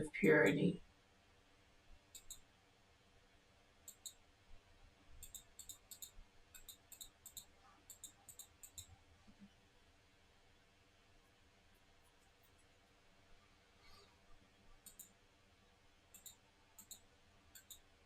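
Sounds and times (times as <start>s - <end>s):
faint sharp clicks: 2.1s - 2.5s, 3.8s - 4.2s, 5.2s - 9.6s, 14.8s - 15.2s, 16.1s - 17.9s.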